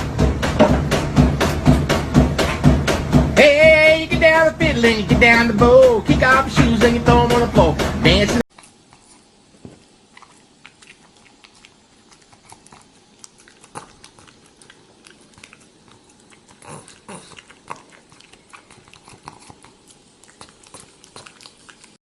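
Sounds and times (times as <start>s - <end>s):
pet chewing with soft crunches: 8.5s - 22.0s.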